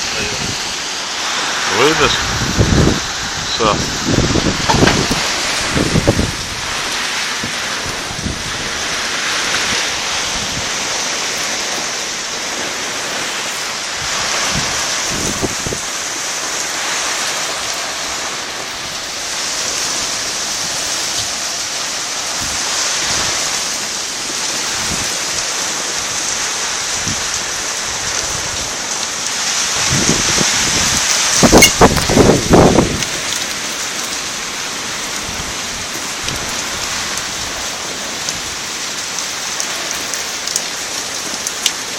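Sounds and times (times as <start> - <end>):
hail and rain pelting: 0.0 - 41.9
strong wind: 0.0 - 41.9
loud thumps and buffets: 4.0 - 6.4.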